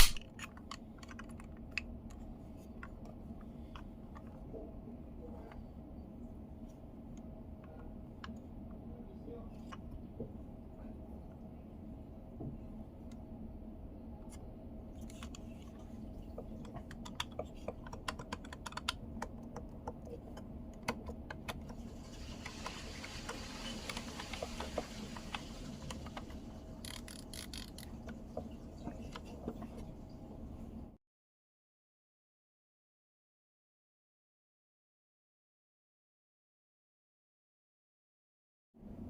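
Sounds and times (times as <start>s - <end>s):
plastic control knob clicks: 0.0s - 1.4s.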